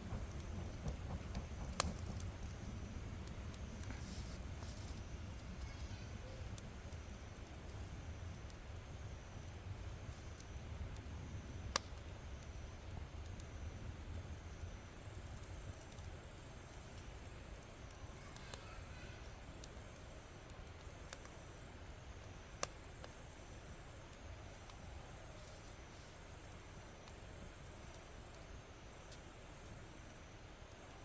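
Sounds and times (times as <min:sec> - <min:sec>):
burning wood popping: 0:00.0 - 0:21.6
insects trilling: 0:13.3 - 0:21.8.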